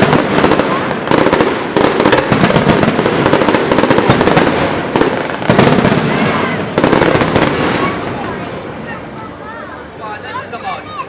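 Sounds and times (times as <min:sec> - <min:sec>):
firework booms: 0:00.0 - 0:08.7
fireworks crackling: 0:00.0 - 0:11.0.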